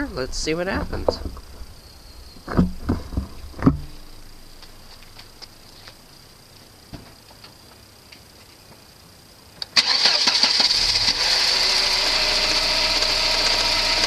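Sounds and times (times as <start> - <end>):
faint high whine: 0.0 - 11.2
dull thumps and knocks: 0.7 - 1.5, 2.4 - 5.5.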